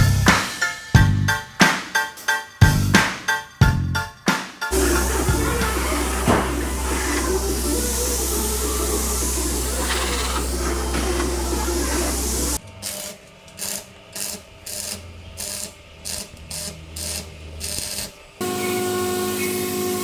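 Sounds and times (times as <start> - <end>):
loud steady background music: 0.0 - 7.7.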